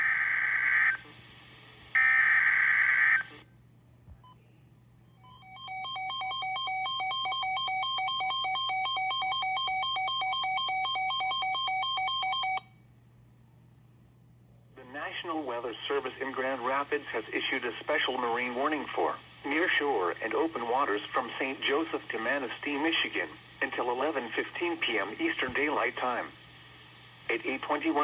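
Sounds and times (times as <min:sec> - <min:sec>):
warbling electronic alert tone: 0:05.3 - 0:12.6.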